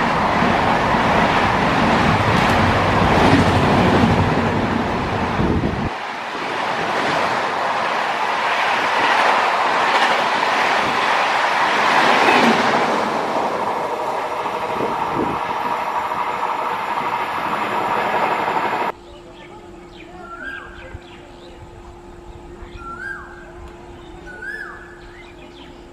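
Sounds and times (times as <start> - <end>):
train wheels rushing on rails: 0.0 - 18.9.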